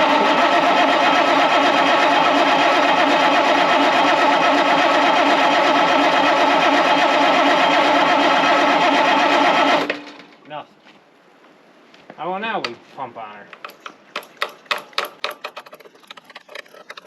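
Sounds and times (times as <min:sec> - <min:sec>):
starter motor cranking engine: 0:00.0 - 0:10.2, 0:13.5 - 0:17.0.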